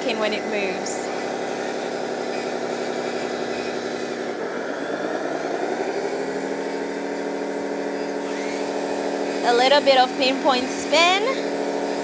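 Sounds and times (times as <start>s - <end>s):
simulated engine sound from speaker: 0.0s - 1.3s, 4.2s - 8.4s, 9.4s - 12.0s.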